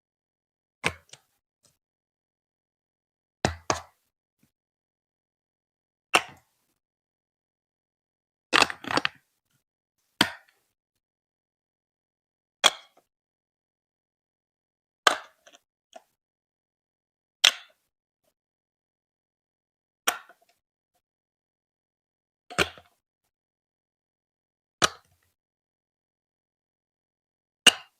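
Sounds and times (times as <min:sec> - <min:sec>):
plastic pieces clacking together: 0:08.6 - 0:09.2.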